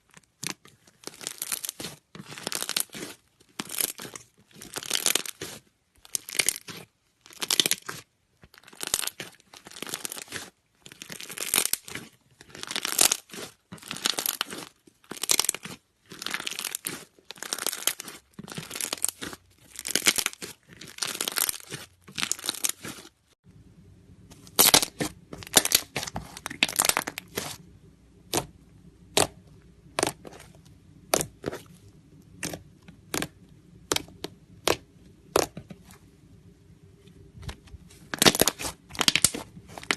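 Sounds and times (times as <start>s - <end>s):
slime squelching and crackling: 0.0s - 23.4s, 24.3s - 35.7s, 37.4s - 39.9s
faint steady hum: 0.0s - 39.9s.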